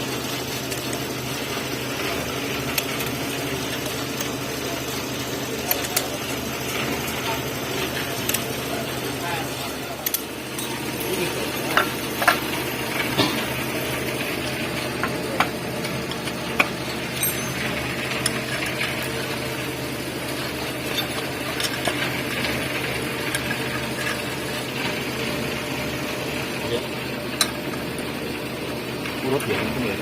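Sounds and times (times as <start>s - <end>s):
tools clicking and tapping: 10.0s - 10.8s, 11.7s - 12.5s, 15.0s - 17.6s.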